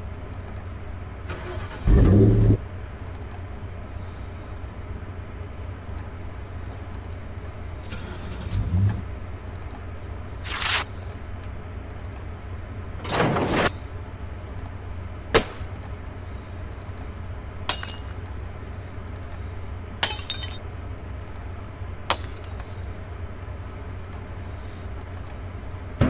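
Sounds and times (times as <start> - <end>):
low steady hum: 0.0 - 26.0
glass smashing: 17.7 - 18.2, 20.0 - 20.6, 22.1 - 22.8.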